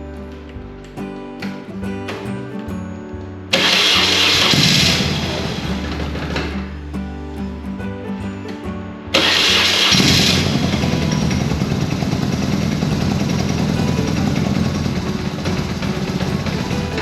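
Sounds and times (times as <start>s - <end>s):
starter motor cranking: 3.5s - 6.7s, 9.2s - 17.0s
motorcycle engine running: 3.5s - 6.8s, 9.2s - 17.0s.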